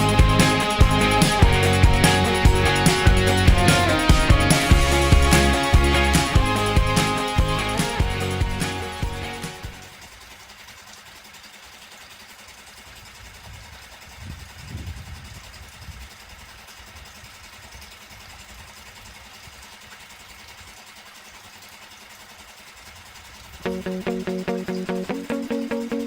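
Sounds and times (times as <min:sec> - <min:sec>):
outboard motor idling: 0:00.0 - 0:13.3, 0:20.2 - 0:26.0.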